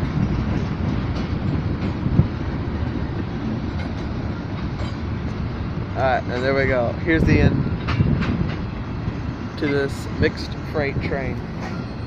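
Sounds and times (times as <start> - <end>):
sharp rail clack: 0.0 - 6.8, 7.5 - 8.8
train wheels rumbling on rail: 0.0 - 12.0.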